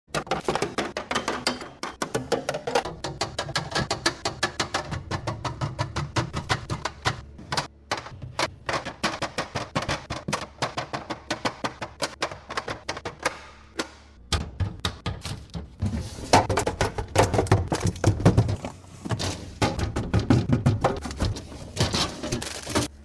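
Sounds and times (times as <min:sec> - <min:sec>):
plastic containers clicking and tapping: 0:00.1 - 0:15.8, 0:16.4 - 0:18.6.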